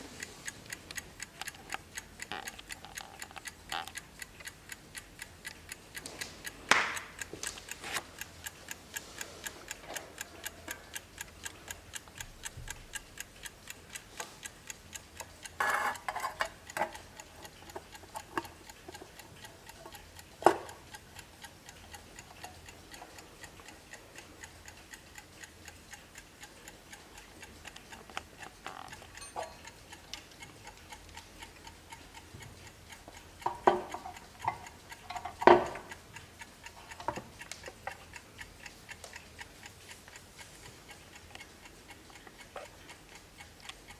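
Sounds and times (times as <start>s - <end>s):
wall clock ticking: 0.0s - 43.9s
clock knocks: 33.5s - 36.0s.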